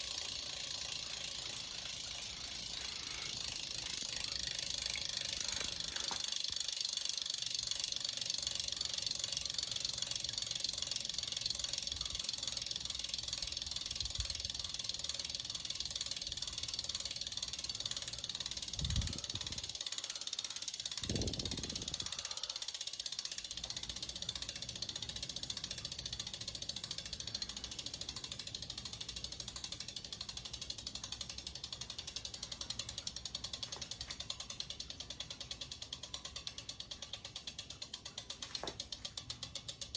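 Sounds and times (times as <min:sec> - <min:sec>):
bicycle freehub clicking: 0:00.0 - 0:39.9.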